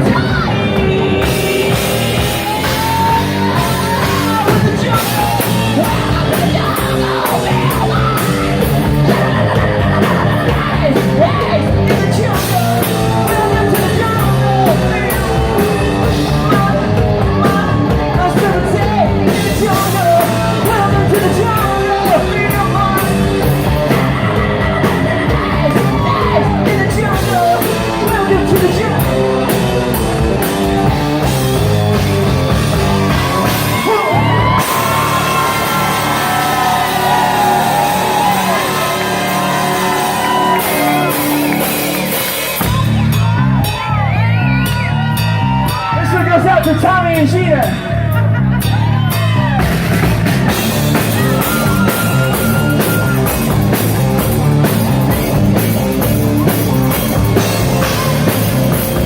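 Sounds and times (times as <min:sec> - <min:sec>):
live rock band playing: 0:00.0 - 0:59.0
yelled vocals: 0:00.0 - 0:59.0.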